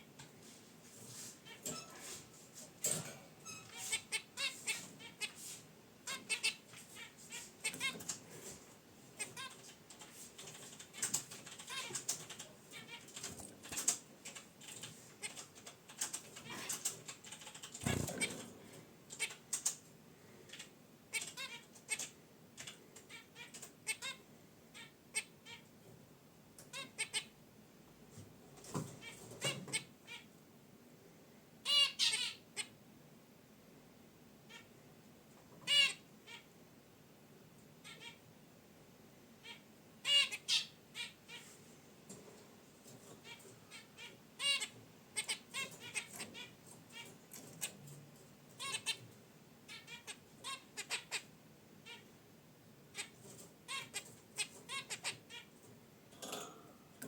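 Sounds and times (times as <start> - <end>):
finches chirping: 6.0 - 8.1, 9.2 - 18.4, 31.6 - 32.7, 39.4 - 41.4, 43.2 - 47.9, 48.6 - 49.0, 49.7 - 52.1, 52.9 - 55.5.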